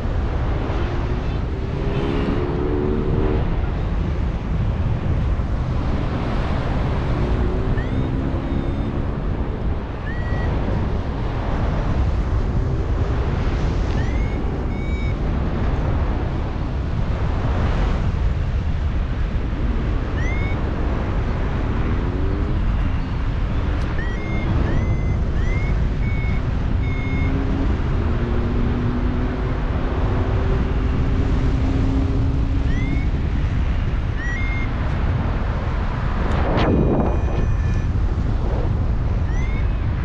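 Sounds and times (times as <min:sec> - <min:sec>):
wind buffeting microphone: 0:00.0 - 0:40.0.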